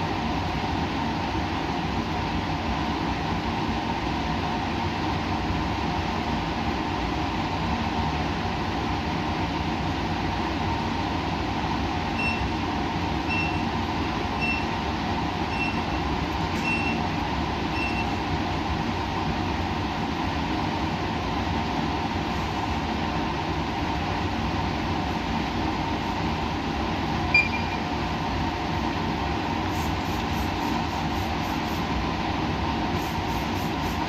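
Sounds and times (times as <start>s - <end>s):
short high beeps: 27.3s - 27.9s.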